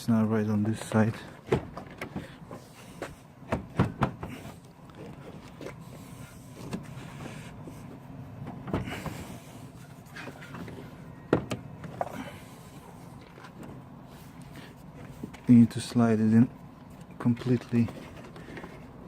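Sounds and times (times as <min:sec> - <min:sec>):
steady low hum: 0:00.0 - 0:19.0.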